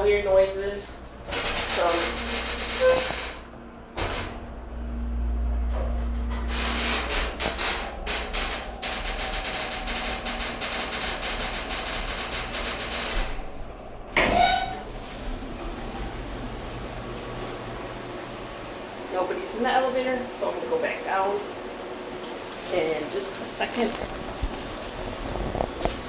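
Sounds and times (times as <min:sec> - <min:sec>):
elevator rumble and hum: 0:00.0 - 0:26.0
rapid clicking rattle: 0:01.2 - 0:03.5, 0:06.5 - 0:13.5.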